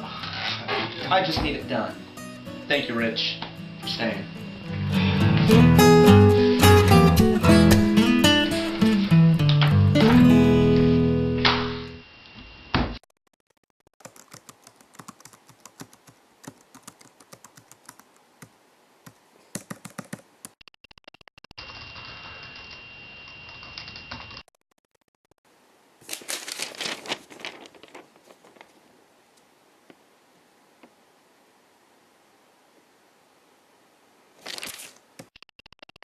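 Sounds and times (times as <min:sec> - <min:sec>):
steady hiss with high whine: 0:01.0 - 0:06.0
typing on computer keyboard: 0:14.0 - 0:18.5, 0:19.5 - 0:20.6.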